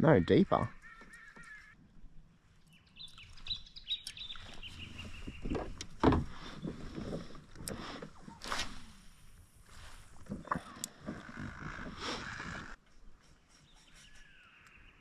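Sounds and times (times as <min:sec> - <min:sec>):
knocks and bumps of kayak gear: 0:04.8 - 0:08.8, 0:10.2 - 0:12.0.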